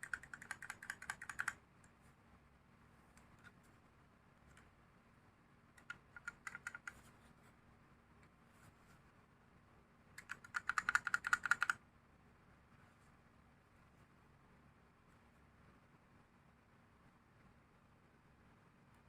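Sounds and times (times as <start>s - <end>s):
mechanical keyboard typing: 0.0s - 1.6s, 5.8s - 7.1s, 10.2s - 11.8s.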